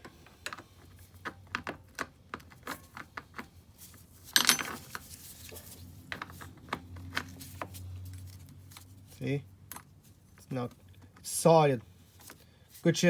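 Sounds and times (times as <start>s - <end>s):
metal tools clicking and clinking: 4.3s - 5.0s.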